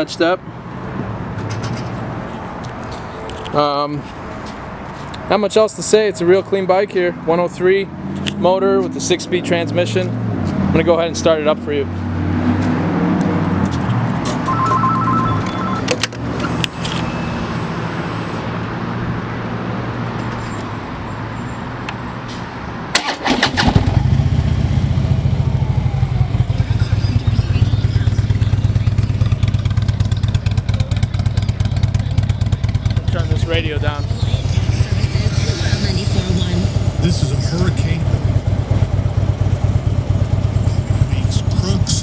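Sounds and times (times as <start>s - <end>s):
electronic beep: 14.4s - 18.4s, 26.5s - 30.4s
motorcycle starter cranking: 23.0s - 24.0s
motorcycle engine idling: 23.9s - 36.2s, 37.8s - 42.0s.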